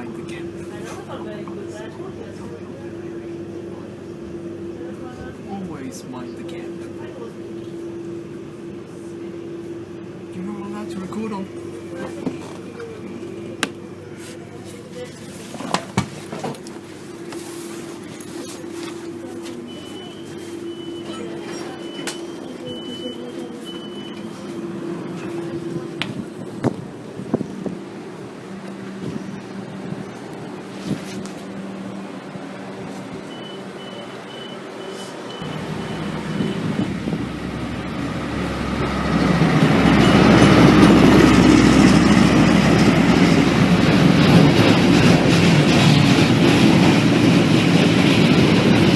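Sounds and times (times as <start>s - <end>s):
electric train hum: 0.0s - 48.9s
high electronic beeps: 33.3s - 36.8s.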